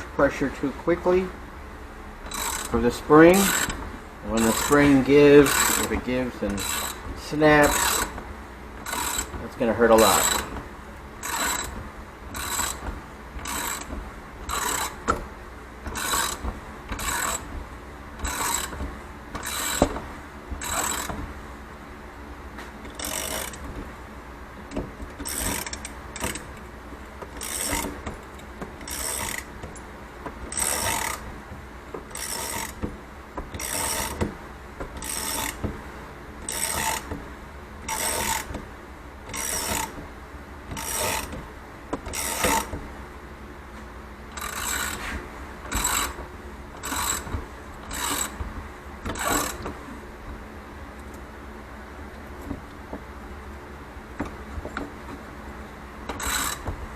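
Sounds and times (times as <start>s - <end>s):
spring compressor rasping cranks: 2.2s - 21.4s, 22.8s - 23.9s, 24.6s - 31.4s, 32.0s - 40.1s, 40.7s - 42.9s, 44.3s - 51.2s, 56.0s - 56.9s.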